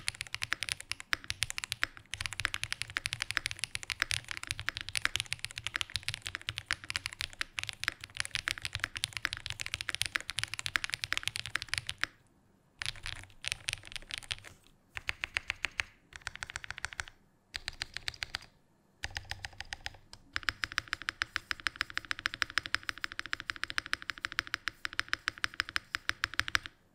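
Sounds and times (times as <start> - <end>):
mechanical keyboard typing: 0.0 - 12.2, 12.8 - 26.8.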